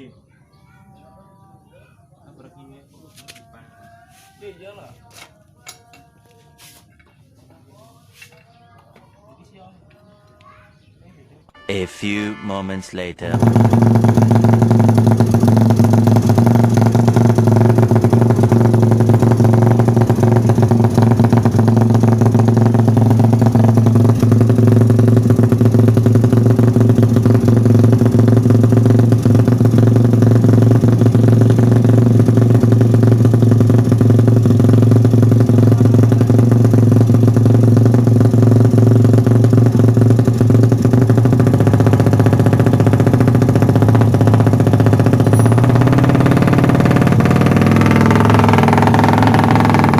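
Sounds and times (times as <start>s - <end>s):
motorcycle engine idling: 13.3s - 49.9s.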